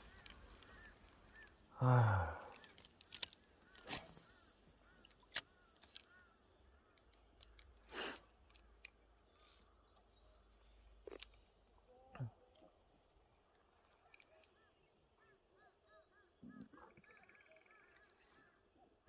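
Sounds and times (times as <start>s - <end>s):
small sharp clicks: 2.4s - 10.2s.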